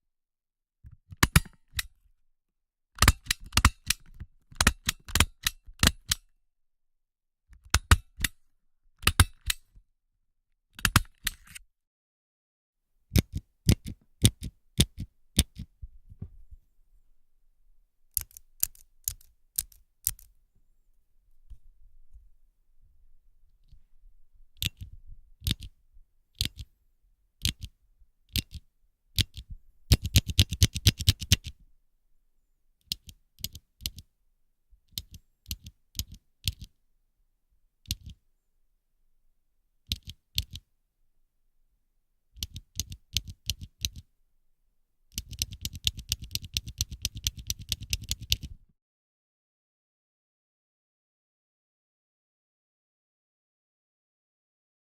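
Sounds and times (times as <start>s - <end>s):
stapler clicking shut: 1.1s - 1.9s, 3.0s - 6.3s, 9.0s - 9.7s.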